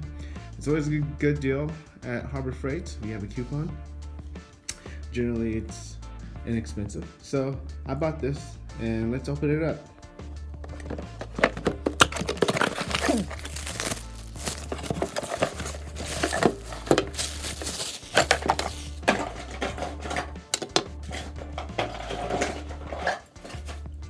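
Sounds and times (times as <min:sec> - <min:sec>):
background music bass: 0:00.0 - 0:24.0
clinks and knocks of drill parts: 0:10.6 - 0:24.0
packaging crinkling and rustling: 0:10.7 - 0:23.9.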